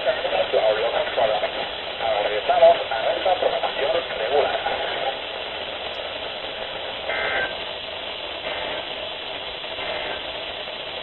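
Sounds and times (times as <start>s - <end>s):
radio static: 0.0s - 11.0s.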